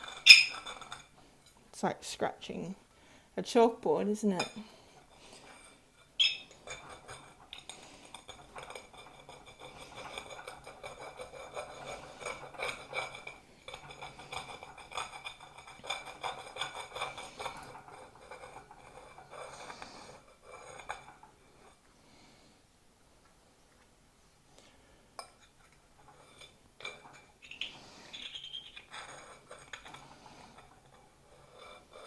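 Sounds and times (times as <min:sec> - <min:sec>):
glass scorer scraping plate: 0:00.0 - 0:01.2, 0:05.4 - 0:21.2, 0:26.0 - 0:32.0
sharp clink: 0:00.2 - 0:00.6, 0:06.2 - 0:06.5.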